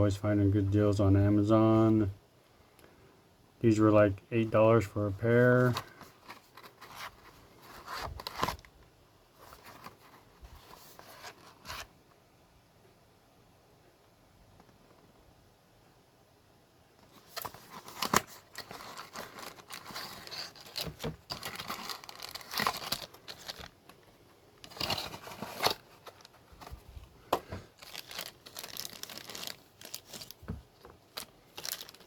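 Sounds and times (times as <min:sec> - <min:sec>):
packaging crinkling and tearing: 0:05.6 - 0:08.7, 0:17.1 - 0:26.8, 0:27.6 - 0:32.0.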